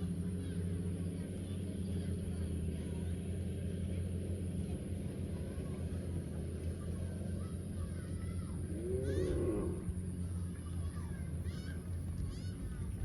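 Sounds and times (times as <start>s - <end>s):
low mechanical drone: 0.0s - 13.0s.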